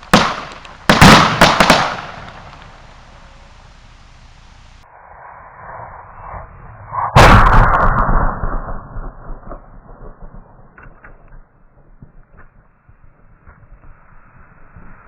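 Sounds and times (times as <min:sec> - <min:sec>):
firework bang echoing: 0:00.2 - 0:02.9, 0:07.1 - 0:12.2.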